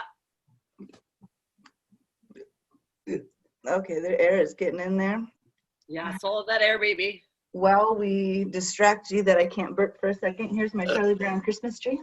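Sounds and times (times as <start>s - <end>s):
person gulping air: 0.8s - 3.4s.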